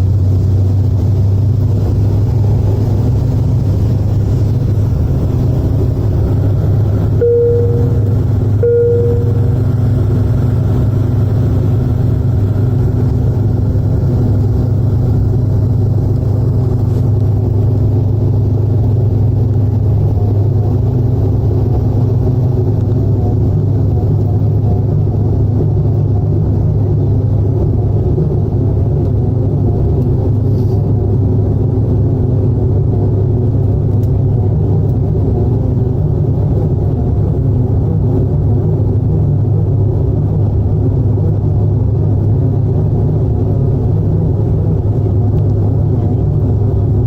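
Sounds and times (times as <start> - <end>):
airliner landing rumble: 0.0 - 47.0
short beeps: 7.2 - 9.9.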